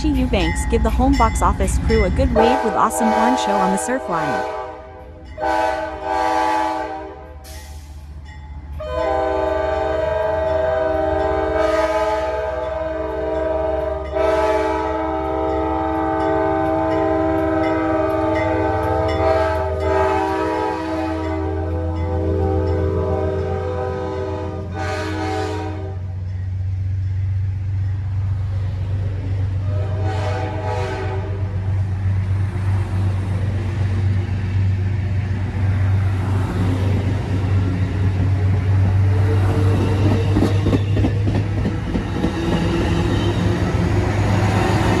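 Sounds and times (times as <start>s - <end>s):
diesel engine drone: 0.0s - 4.5s
locomotive chime horn blasts: 0.0s - 7.6s, 8.8s - 26.1s, 29.6s - 31.4s
wheels clacking over rail joints: 36.3s - 45.0s.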